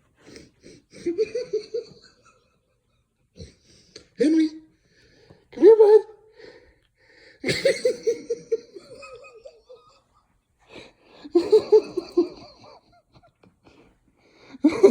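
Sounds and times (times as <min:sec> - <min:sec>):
person laughing: 0:00.6 - 0:04.7, 0:07.4 - 0:10.2, 0:11.1 - 0:13.9.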